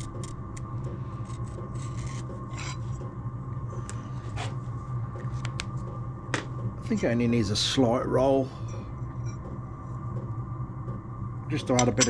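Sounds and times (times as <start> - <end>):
low hum: 0.0 - 12.0
scratching on metal panel: 1.2 - 3.0.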